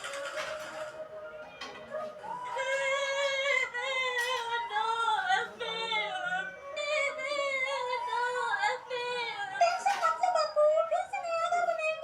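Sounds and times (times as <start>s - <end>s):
background music: 0.0s - 3.9s.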